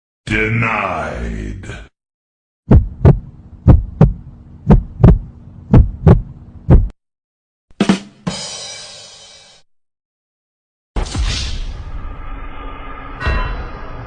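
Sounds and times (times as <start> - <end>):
heartbeat thumps: 2.7 - 7.0
bright ringing crash: 11.1 - 14.0.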